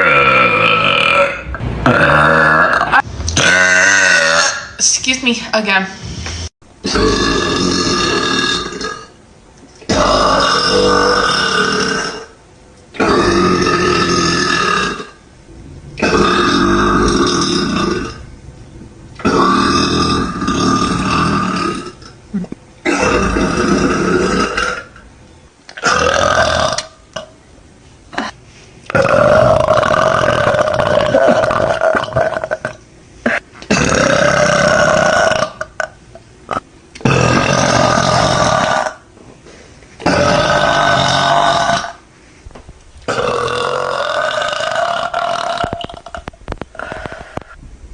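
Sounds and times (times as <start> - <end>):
woman burping: 19.2 - 24.9, 28.1 - 39.0.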